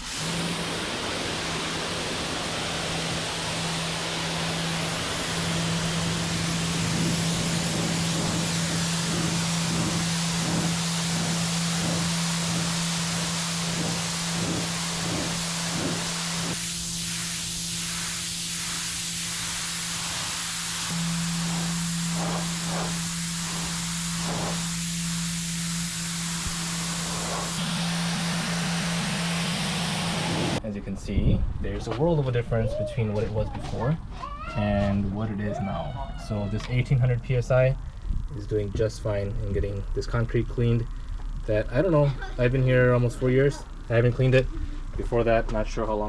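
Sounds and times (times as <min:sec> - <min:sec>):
pressure washer motor humming: 0:00.0 - 0:30.6, 0:36.3 - 0:46.0
water jet hissing on concrete: 0:00.0 - 0:30.6.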